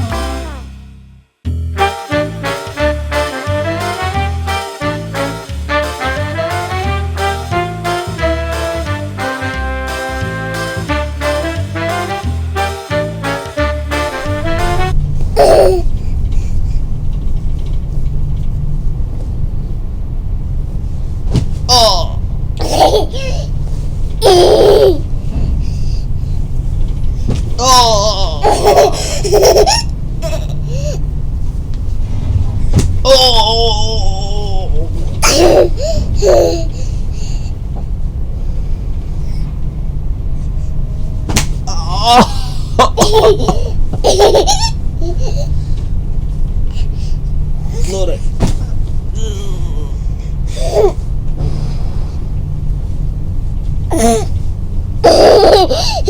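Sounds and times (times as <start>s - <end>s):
ship engines humming: 1.8s - 56.0s
baby vocal sounds: 15.4s - 16.2s, 21.7s - 23.5s, 24.2s - 25.0s, 33.1s - 37.4s, 49.2s - 51.1s, 53.9s - 54.4s
child squealing: 24.2s - 25.0s, 33.0s - 36.7s, 53.9s - 54.3s.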